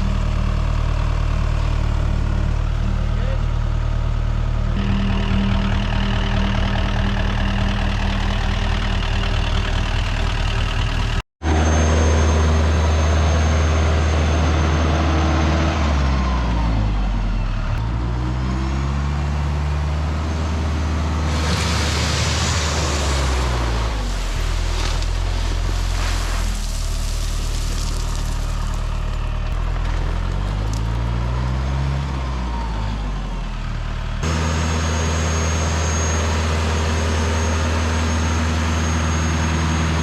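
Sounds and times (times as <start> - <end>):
tractor engine running: 0.0 - 40.0
hiss: 21.3 - 28.0.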